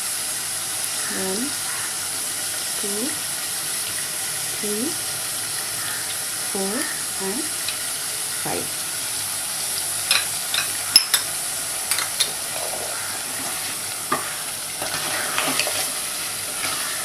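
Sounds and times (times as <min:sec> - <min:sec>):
gravy sizzling in a pan: 0:00.0 - 0:17.0
spoon scraping a pan: 0:10.1 - 0:11.3, 0:11.9 - 0:17.0.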